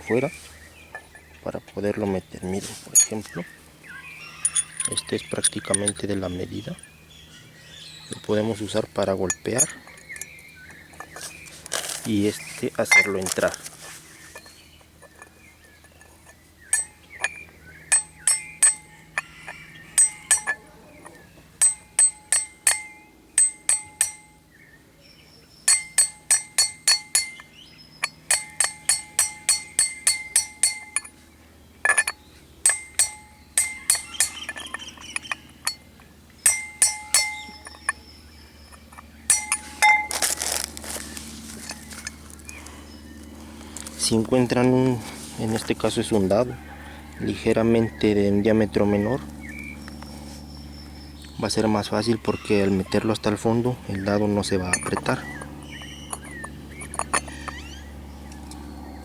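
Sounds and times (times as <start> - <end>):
hammer striking steel socket: 4.4 - 6.0, 16.7 - 19.3, 20.0 - 20.6, 21.6 - 24.4, 25.7 - 31.1, 31.8 - 35.8, 36.4 - 38.0, 38.7 - 40.2, 54.7 - 55.5, 56.1 - 57.6.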